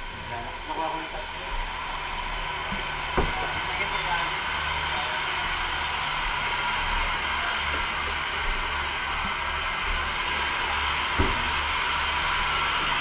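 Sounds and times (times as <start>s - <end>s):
fire hose stream hissing: 0.0s - 13.0s
short knock: 2.7s - 3.5s, 11.2s - 11.6s.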